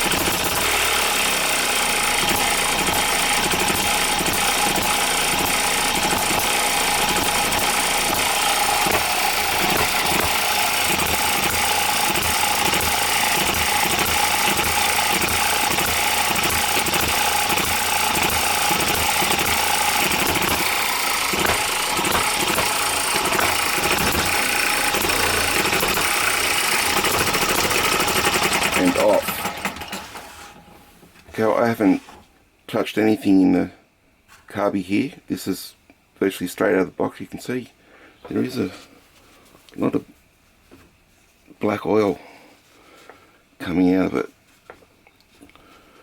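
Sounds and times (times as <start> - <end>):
miniature gas engine running: 0.0 - 30.4.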